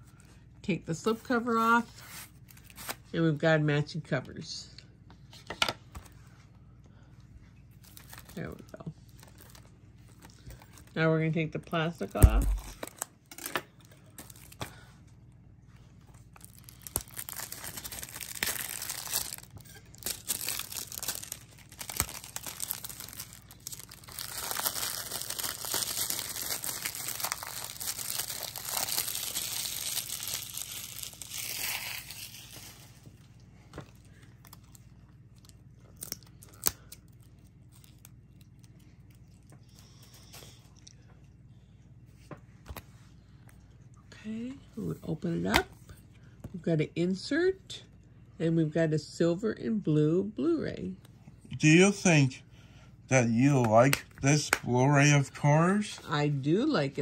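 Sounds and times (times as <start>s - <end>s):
plastic wrap crinkling and tearing: 2.0s - 3.1s, 7.7s - 11.0s, 12.0s - 14.8s, 16.0s - 39.5s.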